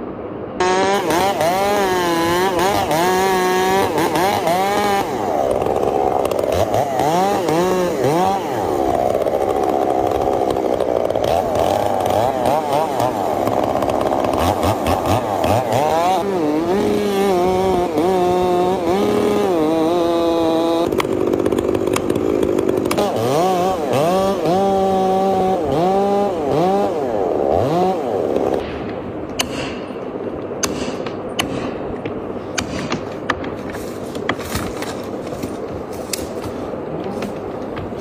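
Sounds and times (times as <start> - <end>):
chainsaw engine revving: 0.6 - 29.9.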